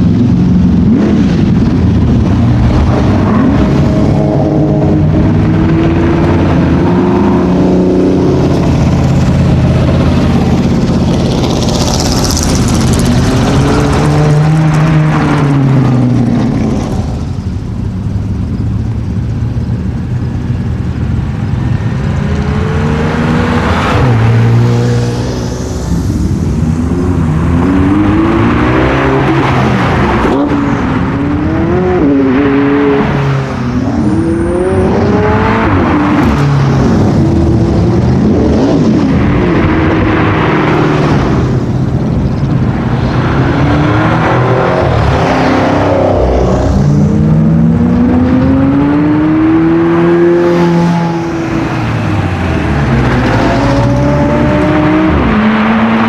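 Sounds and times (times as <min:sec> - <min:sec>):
sports cars accelerating past: 0:21.4 - 0:56.0.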